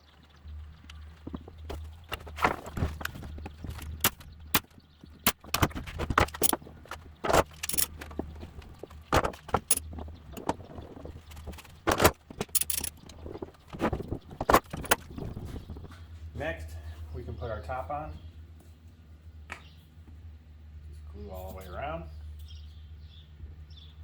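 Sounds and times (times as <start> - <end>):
steady low hum: 0.0 - 24.0
metal tools clinking on wood: 0.8 - 15.2.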